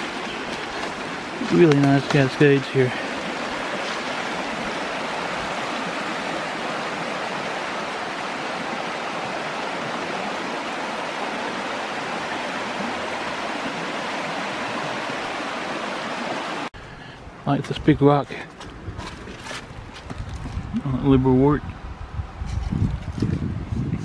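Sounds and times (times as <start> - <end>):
water rushing over rocks: 0.0 - 16.7.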